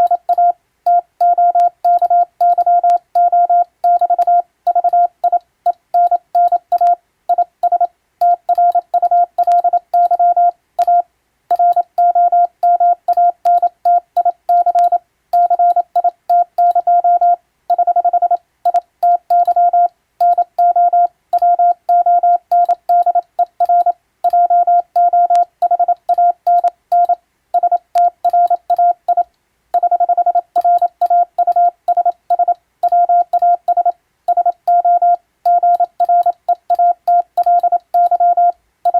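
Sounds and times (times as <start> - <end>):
morse code beeps: 0.0 - 38.9.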